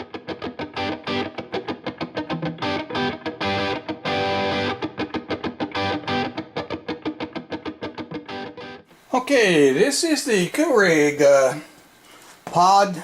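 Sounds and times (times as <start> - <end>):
distorted electric guitar riff: 0.0 - 8.9.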